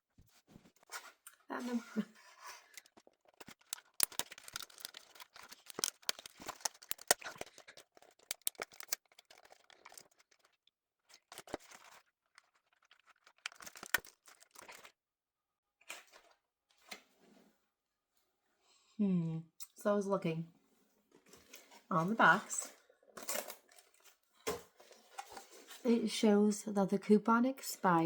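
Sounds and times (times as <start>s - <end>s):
cardboard and plastic crinkling: 2.6s - 15.0s.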